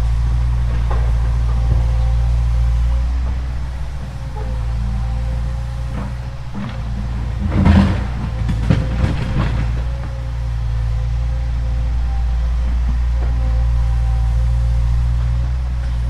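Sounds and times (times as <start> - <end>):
excavator diesel engine running: 0.0 - 16.0
sharp knocks and cracks: 5.9 - 10.3.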